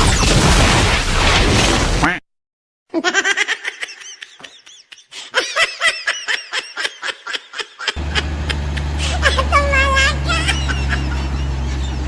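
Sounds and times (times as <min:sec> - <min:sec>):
high-pitched laughter: 0:02.9 - 0:11.5.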